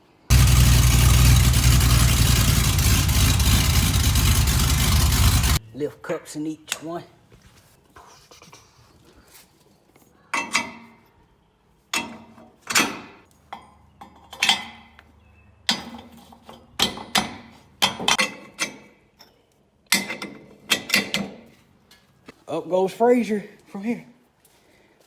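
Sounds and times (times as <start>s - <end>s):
metal clanks and clinks: 0.3s - 5.6s.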